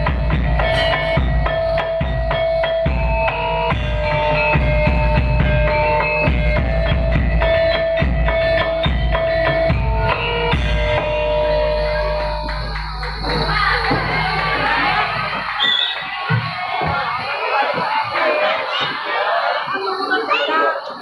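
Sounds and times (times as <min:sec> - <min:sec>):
heavy drumming: 0:00.0 - 0:11.3.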